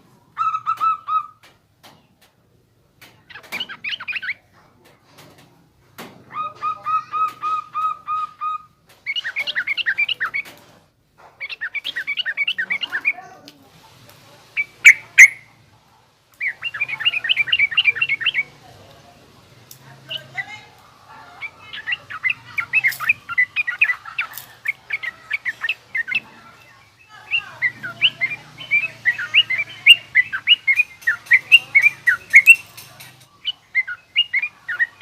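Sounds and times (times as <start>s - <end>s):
bird chattering song: 0.3s - 2.1s, 3.2s - 4.5s, 6.3s - 10.6s, 11.3s - 13.3s, 14.5s - 15.6s, 16.3s - 18.7s, 20.0s - 35.0s.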